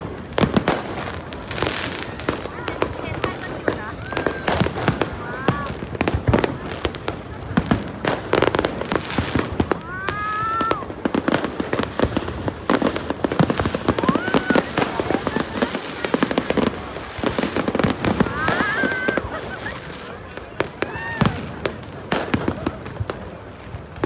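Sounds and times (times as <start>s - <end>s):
fireworks bangs and crackles: 0.0s - 24.0s
whistling firework shells: 17.8s - 22.8s.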